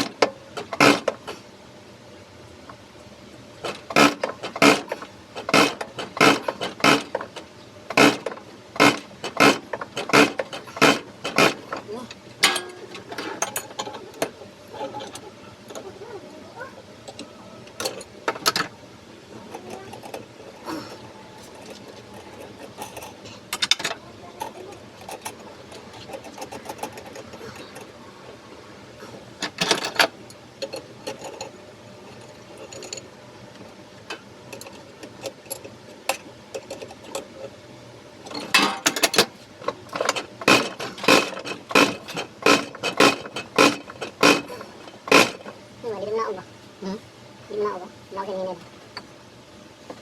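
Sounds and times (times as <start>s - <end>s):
metal tools clinking: 11.2s - 15.9s, 38.3s - 39.3s.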